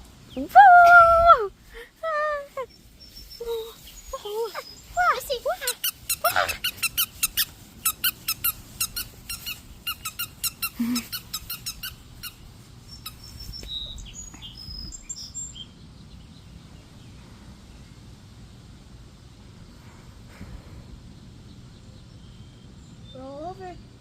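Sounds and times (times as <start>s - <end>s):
faint high chirps: 2.6s - 5.0s
squeaky toy squeaking: 5.6s - 12.4s.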